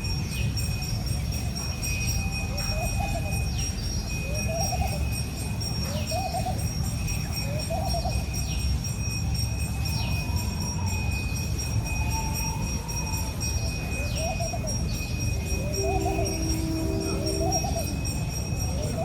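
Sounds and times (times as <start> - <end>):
high ringing tone: 0.0 - 19.0
wavering animal calls: 2.2 - 19.0
falling whistles: 10.2 - 19.0.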